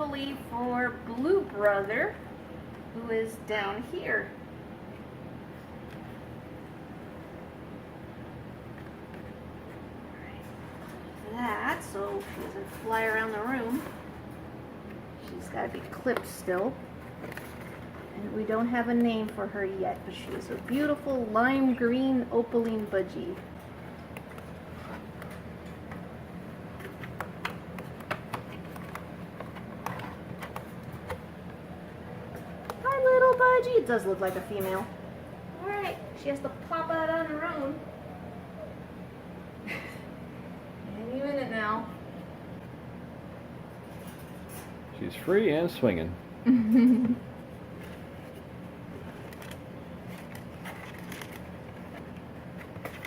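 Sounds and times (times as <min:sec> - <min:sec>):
steady low hum: 0:00.0 - 0:53.0
bird scratching and clicking in cage: 0:26.8 - 0:31.2.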